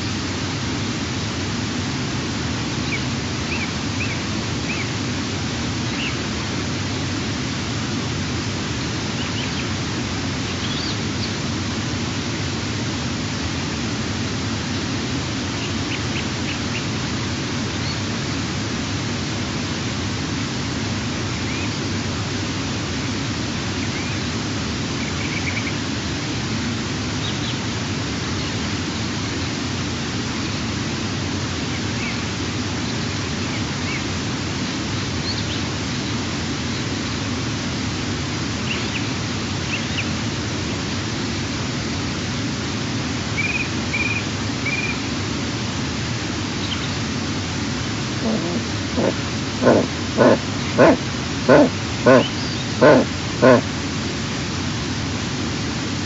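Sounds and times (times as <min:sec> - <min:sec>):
steady outdoor hiss: 0:00.0 - 0:56.0
short high bird calls: 0:48.2 - 0:53.7.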